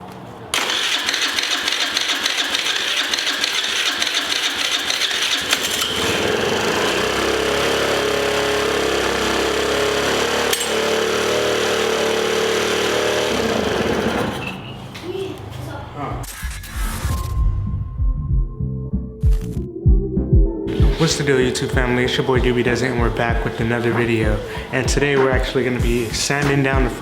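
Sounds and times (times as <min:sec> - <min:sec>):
power tool running: 0:00.5 - 0:14.6, 0:20.7 - 0:24.8.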